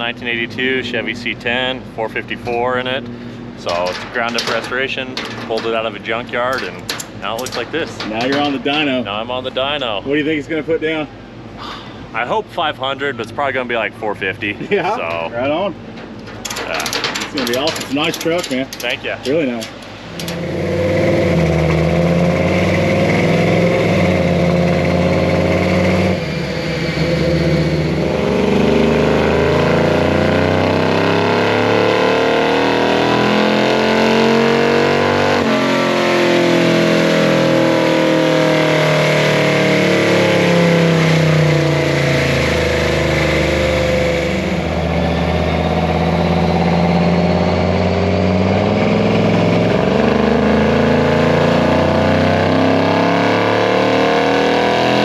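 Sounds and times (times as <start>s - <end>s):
loud engine revving on dyno: 20.2s - 55.0s.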